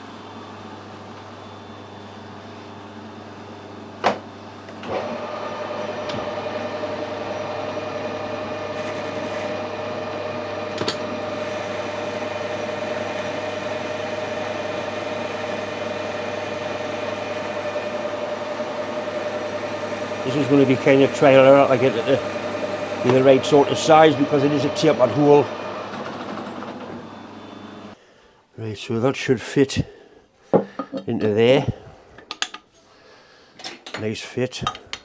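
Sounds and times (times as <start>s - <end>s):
metal lathe humming: 4.7s - 28.0s.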